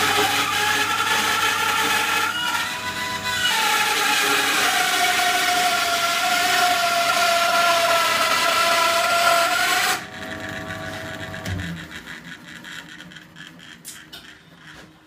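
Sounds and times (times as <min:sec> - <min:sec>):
bandsaw cutting wood: 0:00.0 - 0:14.2.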